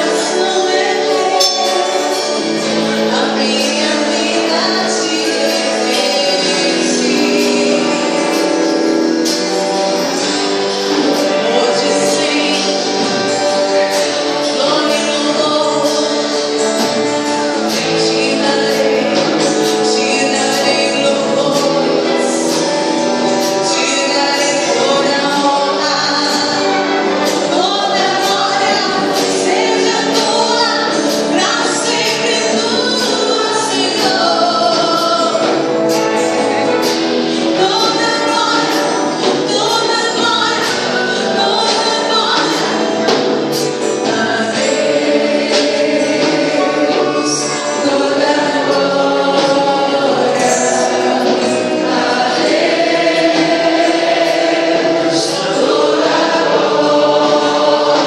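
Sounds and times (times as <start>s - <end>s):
choir singing with band: 0.0s - 58.0s
percussion hits: 1.2s - 3.8s, 34.0s - 58.0s.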